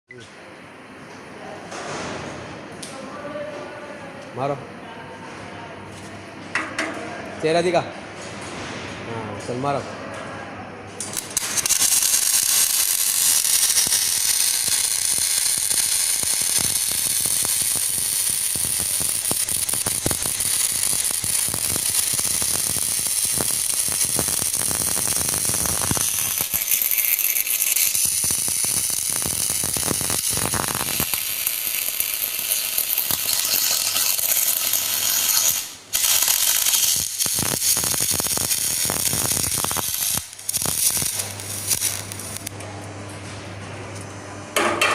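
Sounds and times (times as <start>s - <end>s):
welding arc crackling: 11.0s - 42.6s.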